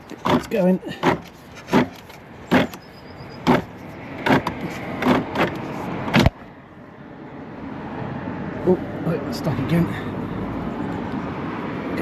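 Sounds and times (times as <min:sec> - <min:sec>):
guttering scraping and knocking: 0:00.0 - 0:06.4.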